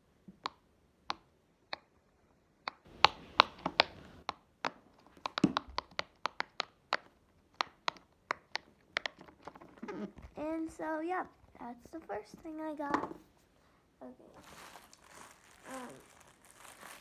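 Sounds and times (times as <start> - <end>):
fidget toy bubbles popping: 2.9 - 10.0.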